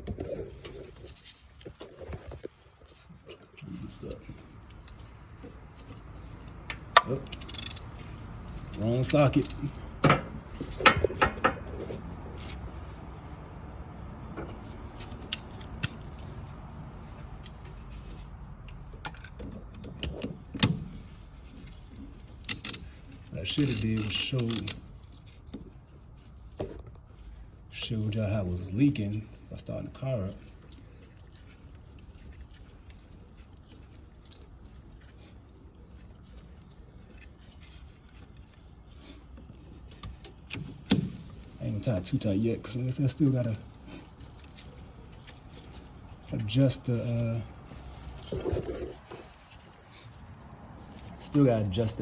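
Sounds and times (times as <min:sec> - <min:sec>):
hand tools clinking: 0:07.0 - 0:08.1, 0:08.8 - 0:10.0, 0:22.4 - 0:24.9.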